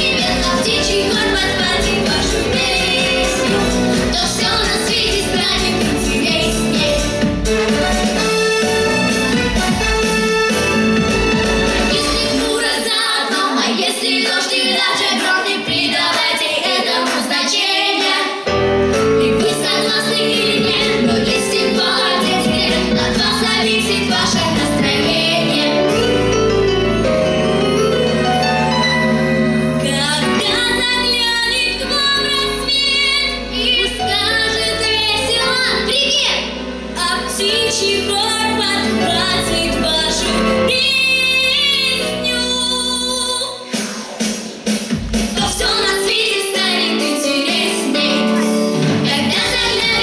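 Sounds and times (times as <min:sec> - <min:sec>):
vocal trio singing: 0:00.0 - 0:07.0, 0:12.0 - 0:26.1, 0:45.5 - 0:50.0
instrumental accompaniment: 0:00.0 - 0:12.7, 0:18.4 - 0:42.6, 0:43.7 - 0:50.0.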